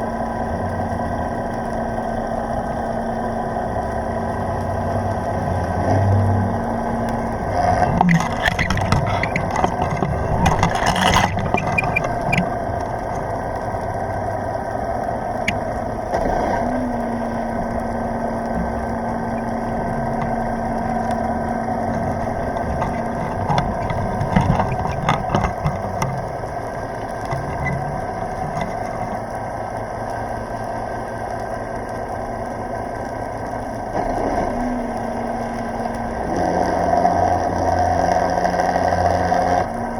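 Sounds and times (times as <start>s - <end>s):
low underwater engine-like hum: 0.0s - 39.9s
knocks and rustles: 7.5s - 13.4s, 21.8s - 29.3s
held tone: 7.6s - 13.3s.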